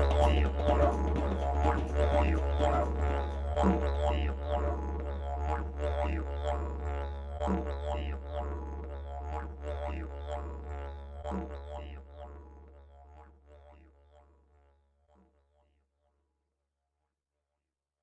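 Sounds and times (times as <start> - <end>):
meditation music drone: 0.0 - 13.7.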